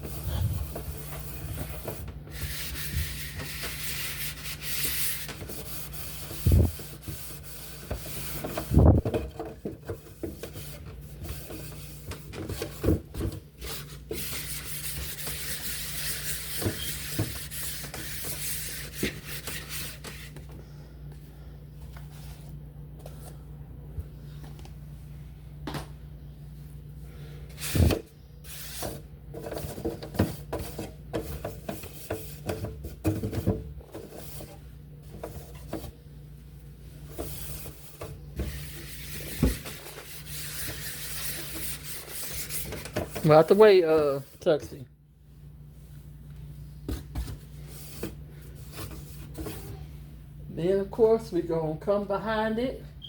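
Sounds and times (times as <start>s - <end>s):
scratchy scrubbing: 0.0s - 8.7s, 13.6s - 20.3s, 38.5s - 44.4s.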